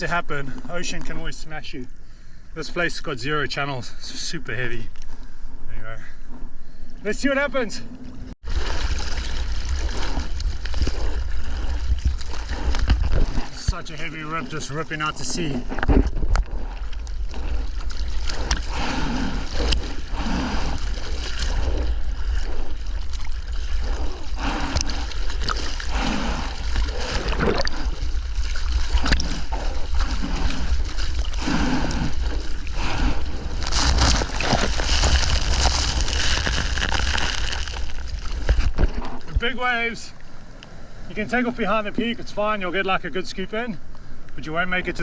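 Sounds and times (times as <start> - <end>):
low rumble of water: 0.0 - 45.0
ocean water splashing: 8.4 - 41.6.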